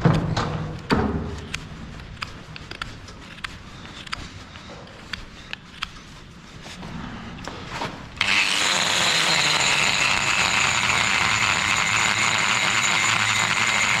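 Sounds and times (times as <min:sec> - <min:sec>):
power tool whining: 0:08.2 - 0:14.0.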